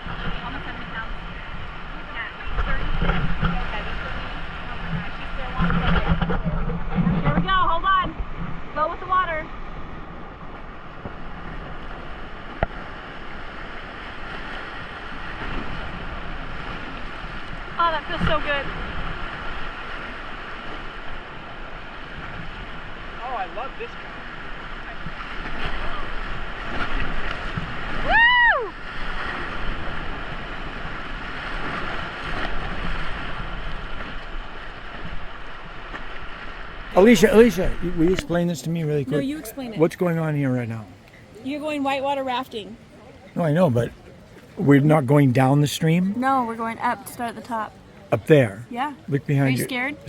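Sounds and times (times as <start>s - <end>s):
wind buffeting microphone: 0.0s - 39.9s
whitewater rushing over rapids: 36.9s - 42.3s.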